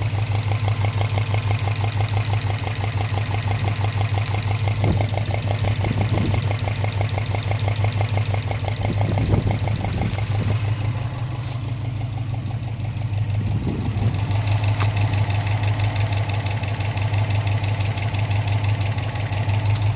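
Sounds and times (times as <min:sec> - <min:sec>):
car engine idling: 0:00.0 - 0:19.9
engine knocking: 0:00.0 - 0:19.9.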